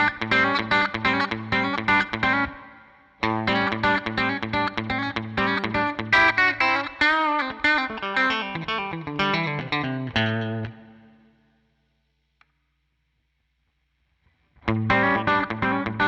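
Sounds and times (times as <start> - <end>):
electric guitar notes with bends: 0.0 - 11.3, 14.6 - 16.0.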